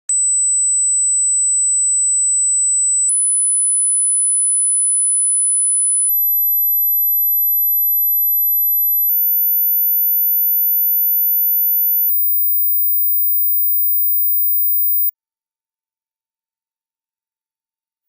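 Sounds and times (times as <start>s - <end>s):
pure sine tone stepping up: 11.4s - 15.1s.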